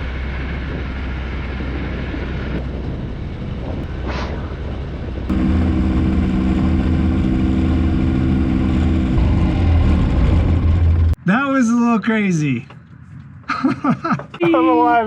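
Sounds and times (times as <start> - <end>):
aircraft engine running: 0.0 - 11.2.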